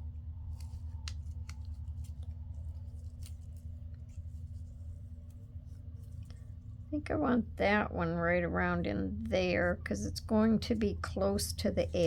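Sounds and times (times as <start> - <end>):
steady low hum: 0.0 - 12.0
paper clicks and rustles: 0.4 - 6.5.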